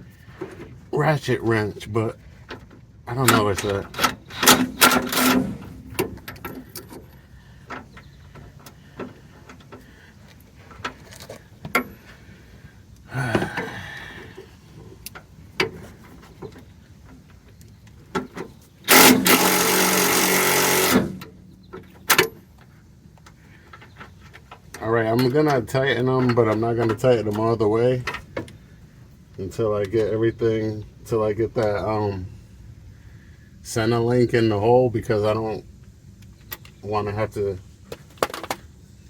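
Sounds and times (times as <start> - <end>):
power tool running: 4.3 - 6.0, 18.9 - 21.4.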